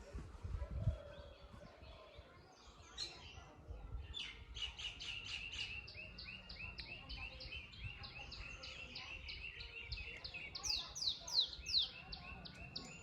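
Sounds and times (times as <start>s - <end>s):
bird chirping: 4.3s - 13.0s.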